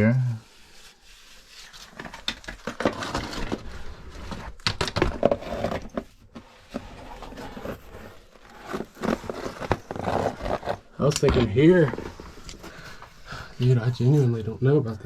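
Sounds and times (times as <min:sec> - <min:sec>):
clothing and gear scraping on rock: 0:06.8 - 0:14.4.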